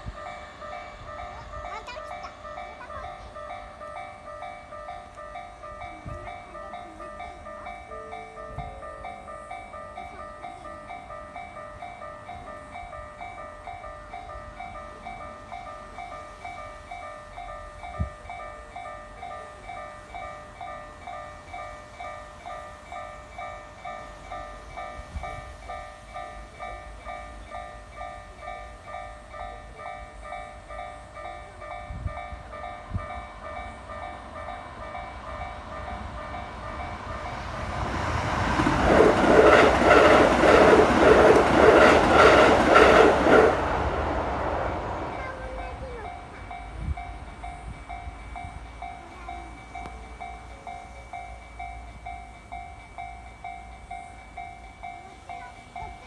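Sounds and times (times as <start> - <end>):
electric train passing: 0.0 - 56.0
train wheels clattering: 31.3 - 50.8.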